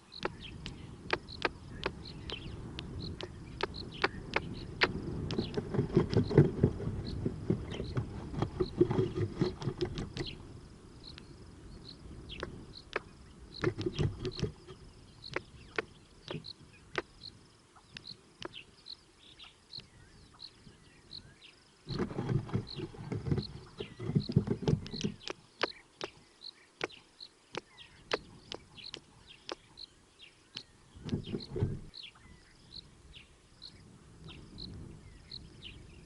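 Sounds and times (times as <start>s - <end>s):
rumbling handling noise: 0.3s - 10.7s, 12.3s - 17.1s, 21.9s - 25.3s, 30.9s - 32.0s
squirrel scratching on microphone: 0.6s - 10.4s, 13.6s - 16.5s, 21.9s - 25.4s, 31.0s - 31.9s.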